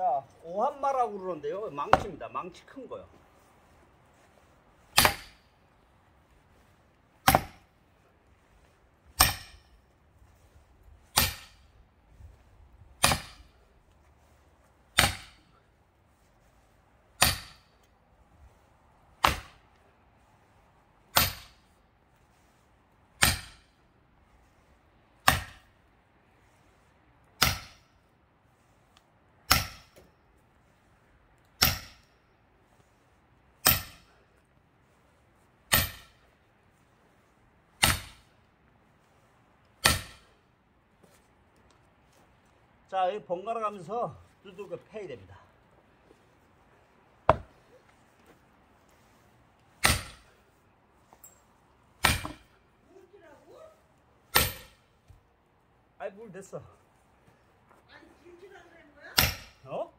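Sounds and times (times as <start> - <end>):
sledgehammer striking axe heads: 1.9 - 2.2, 4.9 - 5.5, 7.2 - 7.7, 9.2 - 9.7, 11.1 - 11.6, 13.0 - 13.5, 15.0 - 15.4, 17.2 - 17.7, 19.2 - 19.6, 21.1 - 21.6, 23.2 - 23.7, 25.2 - 25.7, 27.4 - 27.8, 29.5 - 30.1, 31.6 - 32.1, 33.6 - 34.1, 35.7 - 36.2, 37.8 - 38.2, 39.8 - 40.3, 47.3 - 47.6, 49.8 - 50.3, 52.0 - 52.6, 54.3 - 54.9, 59.2 - 59.6.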